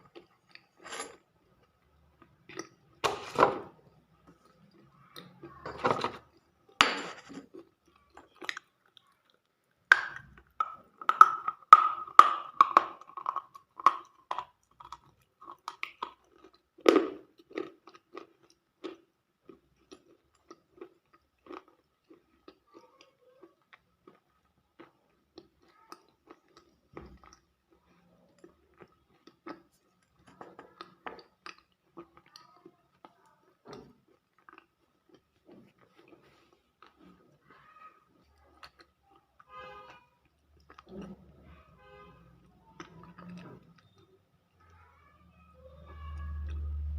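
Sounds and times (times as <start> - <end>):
person chewing crunchy food: 4.2 - 37.4.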